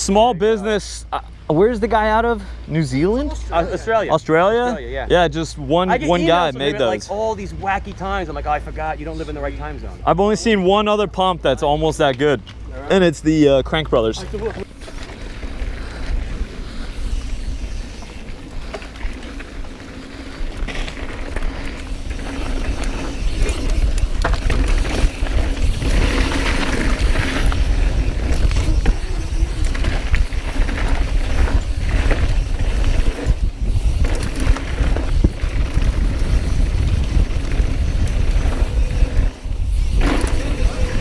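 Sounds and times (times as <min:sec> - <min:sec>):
bike parts rattling and clicking: 0:14.1 - 0:41.0
wind rumbling on microphone: 0:14.1 - 0:41.0.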